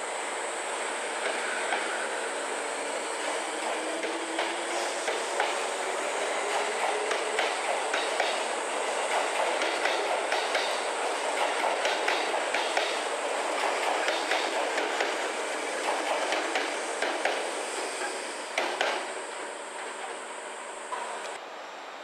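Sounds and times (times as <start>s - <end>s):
train rumble: 0.0s - 22.0s
train wheels clacking over rail joints: 3.2s - 20.2s.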